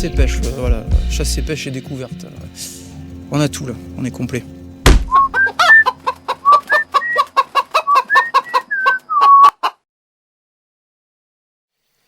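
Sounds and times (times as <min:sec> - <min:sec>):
chicken clucking and cackling: 0:05.1 - 0:09.8.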